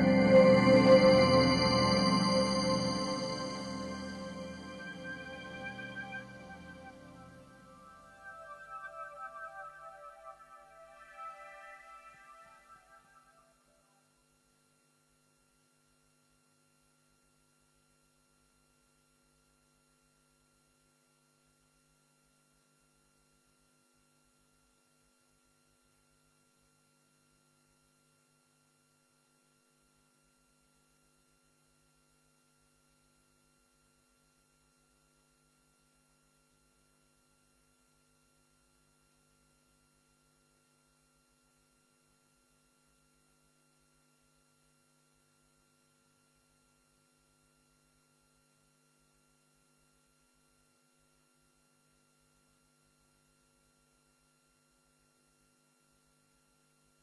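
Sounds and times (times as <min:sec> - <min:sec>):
faint steady hum: 0:00.0 - 0:15.4.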